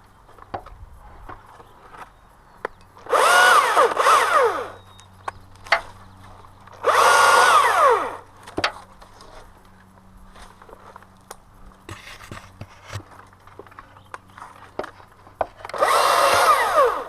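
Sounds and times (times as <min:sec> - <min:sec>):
power tool motor revving: 0:03.0 - 0:04.8, 0:06.8 - 0:08.3, 0:15.6 - 0:17.0.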